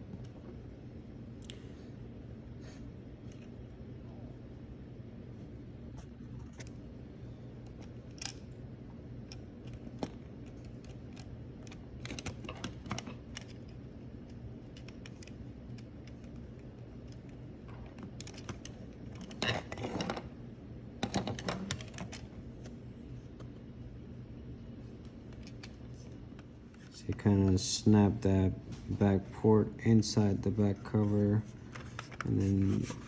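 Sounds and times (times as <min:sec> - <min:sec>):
low steady hum: 0:00.0 - 0:33.0
plastic parts clicking and rattling: 0:09.3 - 0:13.7.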